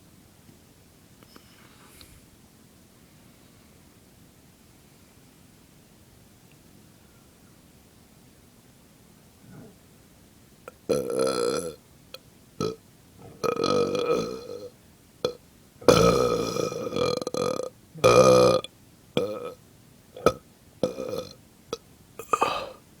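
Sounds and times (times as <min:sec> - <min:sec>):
person belching: 0:12.6 - 0:14.7, 0:15.8 - 0:19.6, 0:20.2 - 0:21.4, 0:22.2 - 0:22.8.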